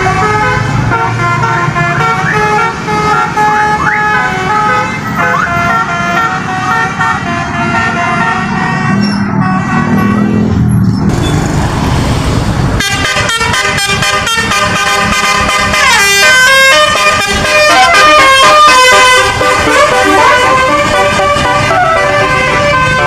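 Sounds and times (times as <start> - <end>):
bus air horn melody: 0.0 - 10.5, 12.8 - 23.0
rumbling noise: 10.5 - 12.9.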